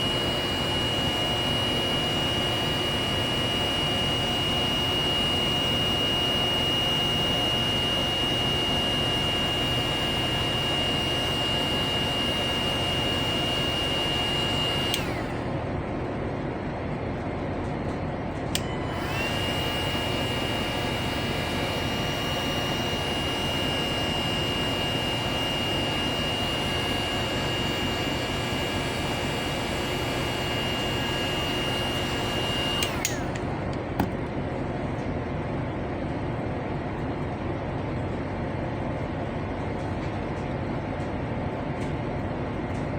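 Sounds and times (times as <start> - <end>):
power tool motor whining: 0.0 - 15.7, 18.5 - 33.6
power tool switch click: 8.2 - 15.5, 18.5 - 29.1, 29.7 - 34.1.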